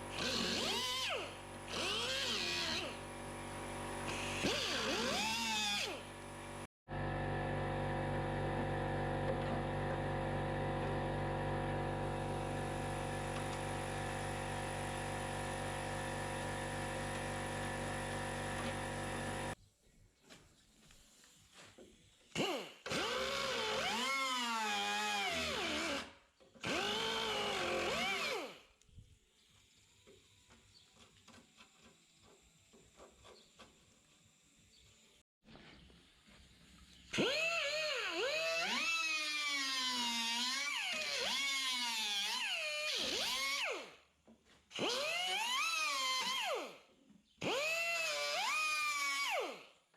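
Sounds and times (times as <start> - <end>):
electric drill running: 0.1 - 6.7, 10.6 - 19.6, 22.9 - 28.6.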